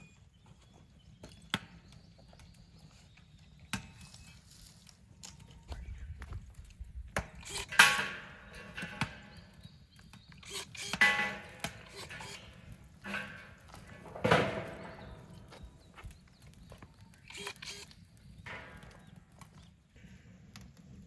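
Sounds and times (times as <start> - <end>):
hard knocks on metal: 13.1 - 15.3.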